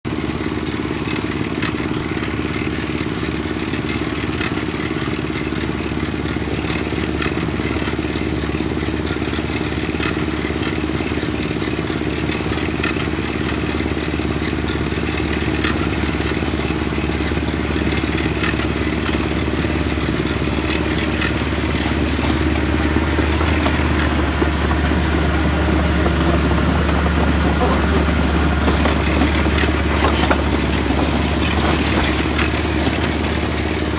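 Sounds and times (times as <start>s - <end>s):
diesel engine running: 0.1s - 33.9s.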